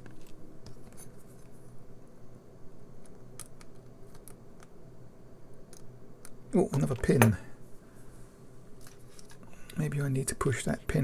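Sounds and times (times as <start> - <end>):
small tools tapping plastic parts: 5.7 - 7.4.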